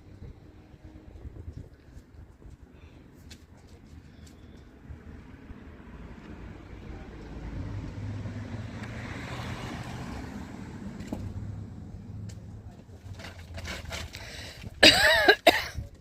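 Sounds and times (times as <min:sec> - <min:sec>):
vehicle engine hum: 0:00.0 - 0:15.3
road noise: 0:00.0 - 0:16.0.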